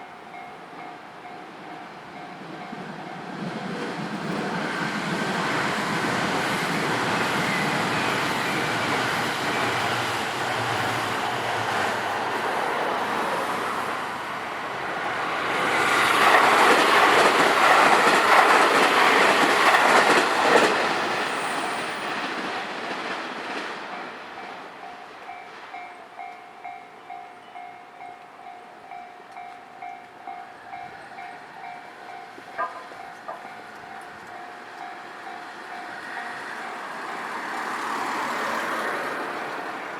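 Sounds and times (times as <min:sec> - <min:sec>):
train wheels clattering: 0:15.5 - 0:24.7.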